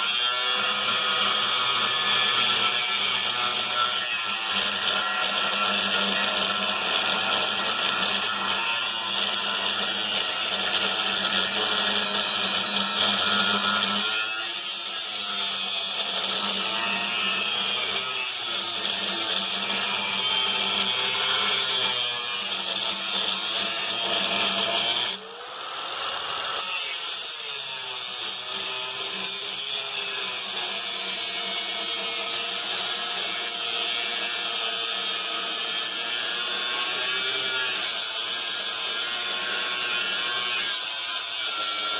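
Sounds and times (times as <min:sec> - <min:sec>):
power tool cutting steel: 0:00.0 - 0:41.9.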